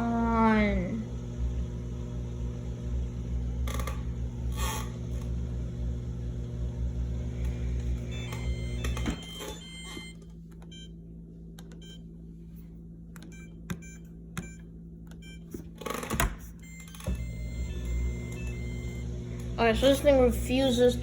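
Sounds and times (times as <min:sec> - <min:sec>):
dishwasher drain pump humming: 0:00.0 - 0:12.2, 0:12.8 - 0:21.0
short electronic beeps: 0:13.3 - 0:14.6.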